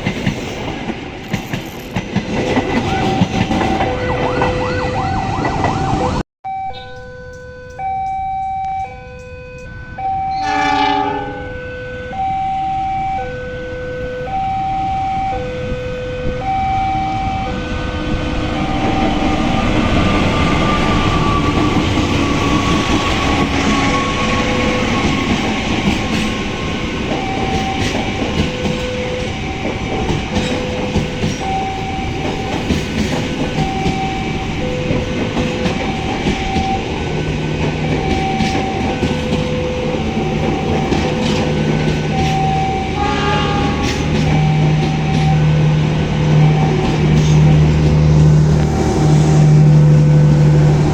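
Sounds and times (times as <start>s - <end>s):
train wheels clattering on rails: 0.0s - 4.5s, 18.4s - 49.0s
crossing alarm two-tone beep: 2.6s - 47.9s
train horn sliding down in pitch: 2.9s - 7.9s, 8.9s - 25.5s, 42.2s - 50.9s.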